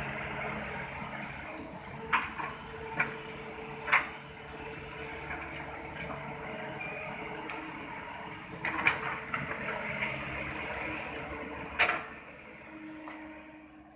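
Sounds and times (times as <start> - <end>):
small motor whirring with hiss: 0.2 - 6.0, 12.1 - 13.9.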